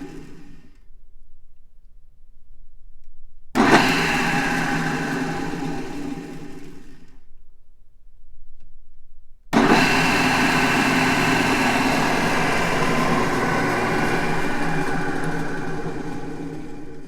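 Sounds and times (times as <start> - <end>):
drill press whirring: 3.6 - 7.1, 9.6 - 17.0.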